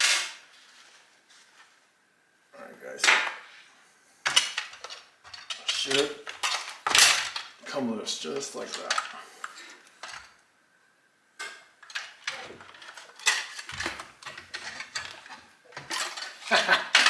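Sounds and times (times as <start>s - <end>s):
hand tools clicking and knocking: 11.4s - 17.0s.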